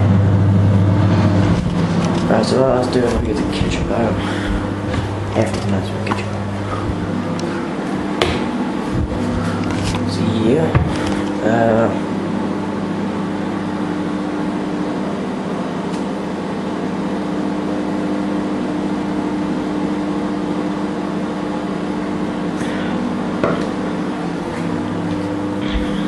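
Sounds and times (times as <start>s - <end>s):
microwave oven humming: 0.0s - 26.0s.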